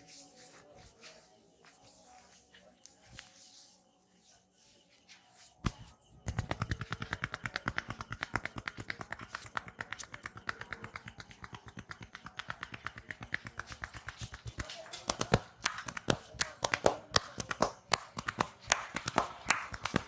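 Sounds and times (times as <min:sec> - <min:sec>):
hands tapping in sharp claps: 0:05.6 - 0:20.0.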